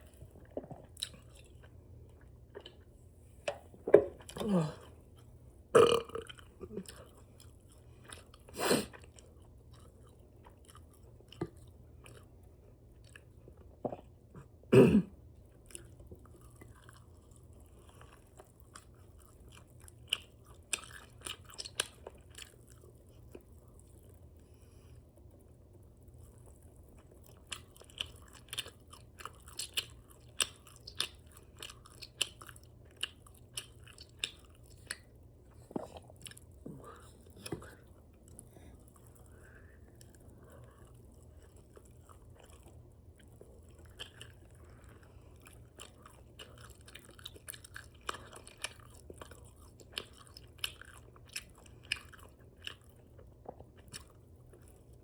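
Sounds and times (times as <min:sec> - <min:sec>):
open-mouth chewing and lip smacking: 0:15.6 - 0:55.0.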